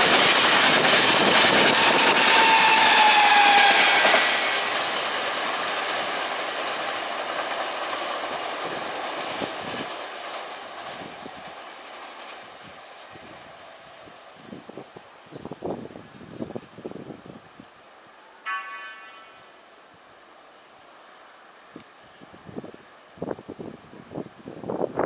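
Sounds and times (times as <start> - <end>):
electric train passing: 0.0 - 25.0
train wheels rumbling on rails: 0.0 - 25.0.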